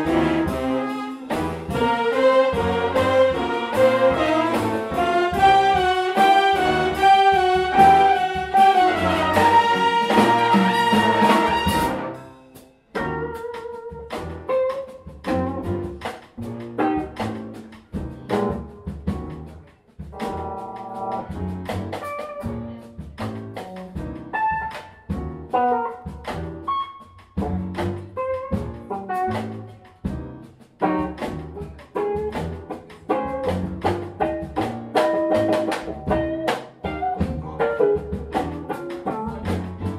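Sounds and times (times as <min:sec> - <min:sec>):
brass and saxophone chords: 0:00.0 - 0:13.4
bass: 0:00.0 - 0:39.9
drums: 0:00.0 - 0:39.9.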